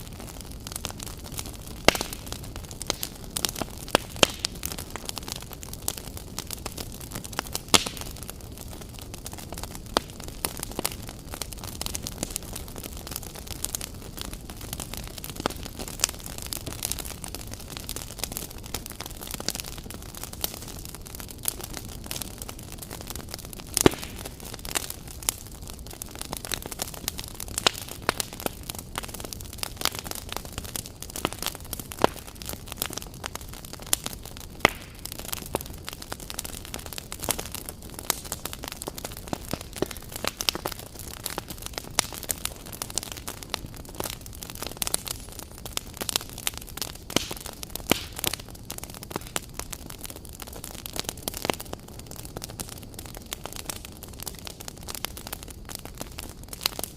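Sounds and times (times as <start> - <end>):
campfire crackling and popping: 0.0 - 56.9.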